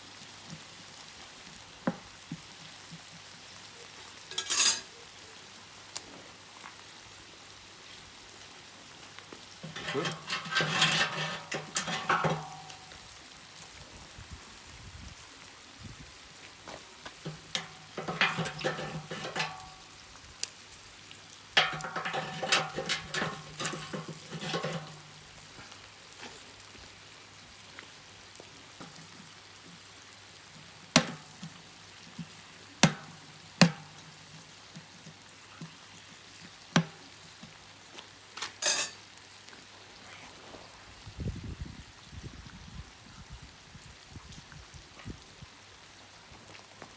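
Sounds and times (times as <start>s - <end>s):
peppers sizzling in a pan: 0.0s - 46.9s
spatula scraping a pan: 4.3s - 4.9s, 9.6s - 12.9s, 17.2s - 19.8s, 21.6s - 25.4s, 38.6s - 39.0s.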